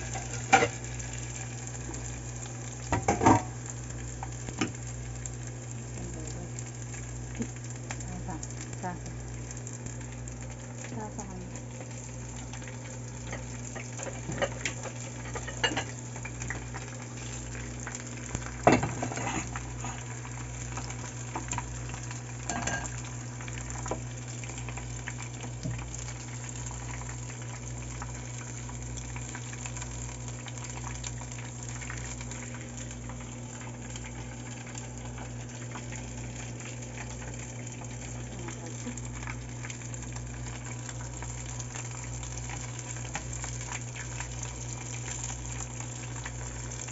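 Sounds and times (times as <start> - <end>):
oil sizzling deep-frying: 0.0 - 46.9.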